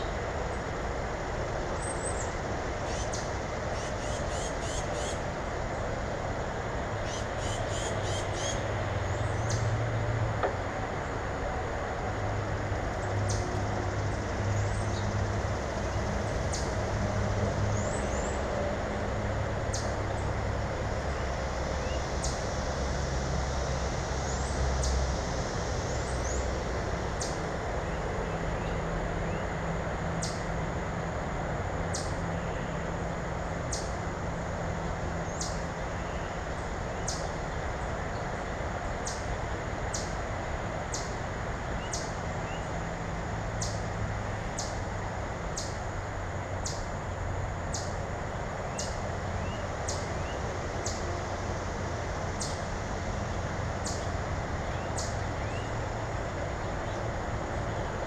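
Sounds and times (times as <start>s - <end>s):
distant traffic rumble: 0.0s - 58.0s
small birds chirping: 1.8s - 5.2s, 7.0s - 9.7s, 48.6s - 51.1s, 52.4s - 52.7s, 53.8s - 55.8s.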